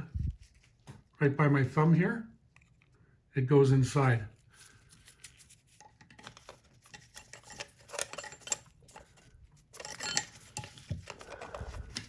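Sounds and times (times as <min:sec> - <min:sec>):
metal sewing machine parts clicking: 0:07.0 - 0:09.1, 0:09.7 - 0:10.8.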